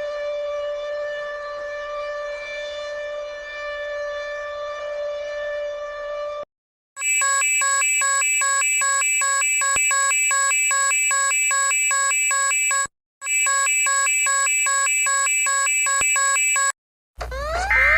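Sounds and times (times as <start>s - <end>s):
long steady alarm tone: 7.0s - 16.8s
alternating emergency alert beeps: 7.0s - 17.9s.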